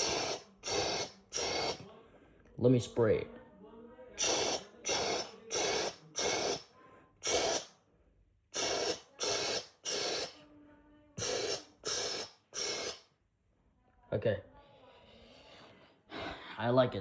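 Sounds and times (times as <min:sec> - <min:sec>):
person imitating spray hisses: 0:00.0 - 0:01.8, 0:04.2 - 0:07.7, 0:08.6 - 0:10.4, 0:11.2 - 0:13.0.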